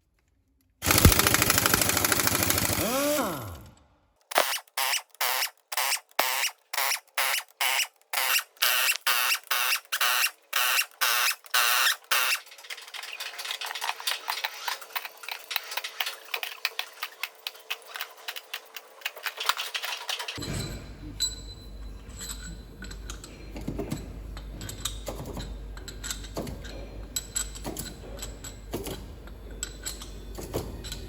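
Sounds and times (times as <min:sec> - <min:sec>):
ratchet wrench clicking: 0:04.3 - 0:12.4.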